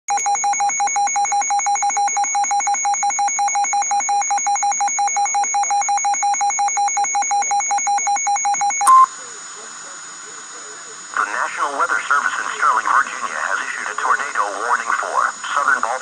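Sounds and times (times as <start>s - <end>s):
electronic alert tone beeping: 0.1s - 9.1s.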